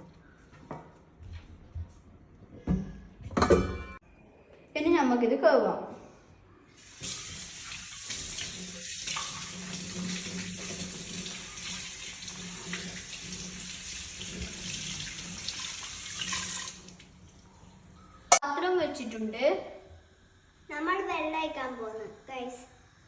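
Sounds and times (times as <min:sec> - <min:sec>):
pot being washed: 0:06.8 - 0:18.4
tap running into a sink: 0:07.0 - 0:17.0.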